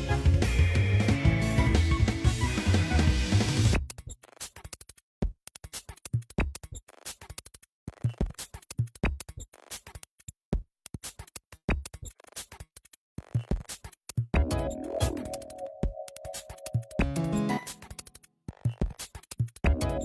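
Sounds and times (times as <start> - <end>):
electronic music with drum-machine beat: 0.0 - 4.1, 13.2 - 20.0.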